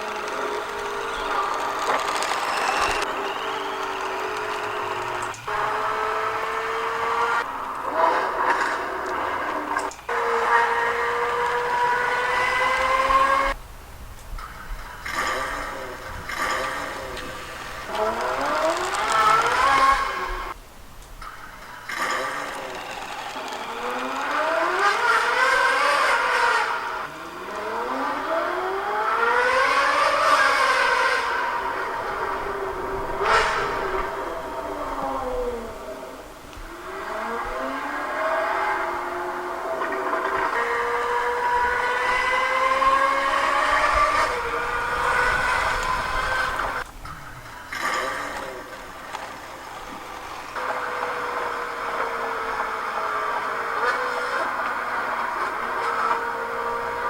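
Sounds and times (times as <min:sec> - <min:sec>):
sports car engine accelerating: 0:00.0 - 0:20.6, 0:21.2 - 0:57.0.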